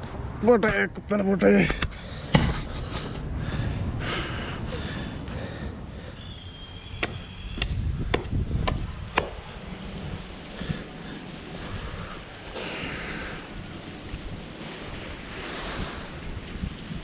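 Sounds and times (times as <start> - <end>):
wind rumbling on microphone: 1.8 - 17.0
sharp strikes on wood: 7.0 - 9.4.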